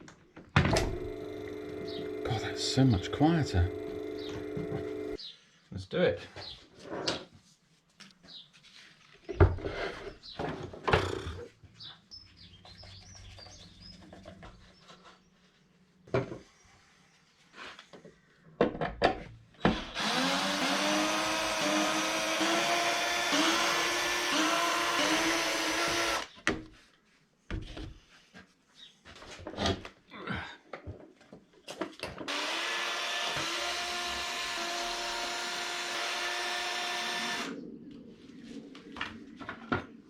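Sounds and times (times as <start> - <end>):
lathe electric motor running: 0.8 - 5.2, 20.0 - 26.2, 32.3 - 37.5
parts knocking and clicking: 3.7 - 5.1.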